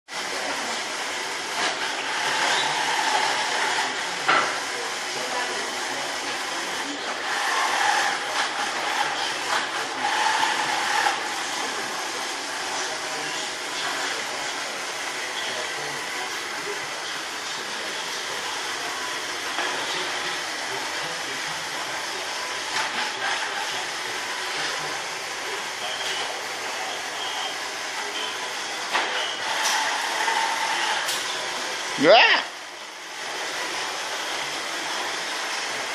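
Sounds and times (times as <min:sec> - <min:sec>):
robot vacuum cleaner running: 0:00.1 - 0:35.9.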